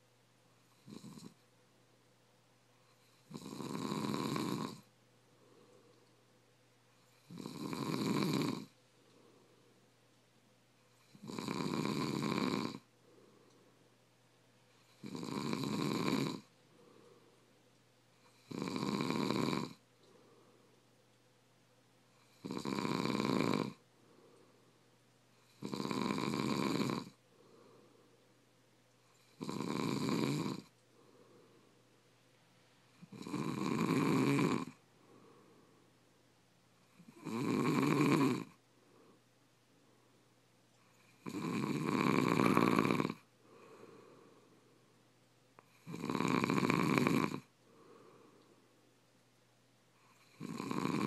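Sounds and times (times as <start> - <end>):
person snoring: 0.7 - 1.4, 2.9 - 5.9, 7.0 - 9.6, 10.9 - 13.6, 14.8 - 17.3, 18.2 - 20.6, 22.2 - 24.5, 25.4 - 28.1, 29.1 - 31.7, 32.9 - 35.8, 36.8 - 38.6, 40.9 - 44.6, 45.6 - 48.5, 50.0 - 51.0
faint breathing: 4.8 - 7.4, 8.6 - 10.0, 12.8 - 14.0, 15.8 - 18.4, 19.0 - 21.0, 23.7 - 25.0, 27.0 - 29.2, 30.3 - 33.2, 34.2 - 36.1, 38.4 - 41.2, 43.1 - 45.8, 47.4 - 49.0.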